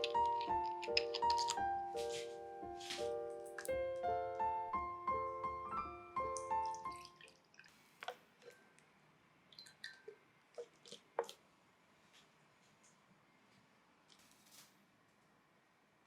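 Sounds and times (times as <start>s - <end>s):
piano music: 0.0s - 7.3s.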